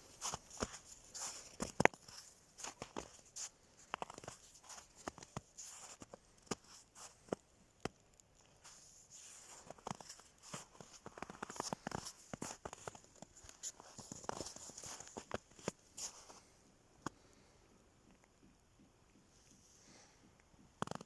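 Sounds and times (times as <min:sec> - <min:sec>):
sharp pops and snaps: 0:20.4 - 0:21.0.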